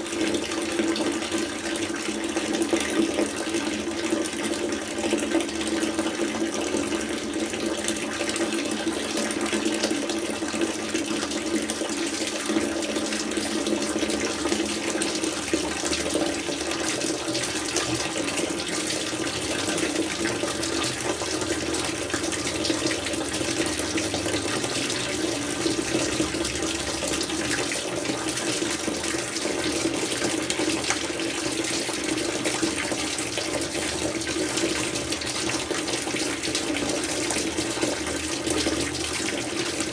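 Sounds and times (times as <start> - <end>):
tap water pouring into container: 0.0 - 39.9.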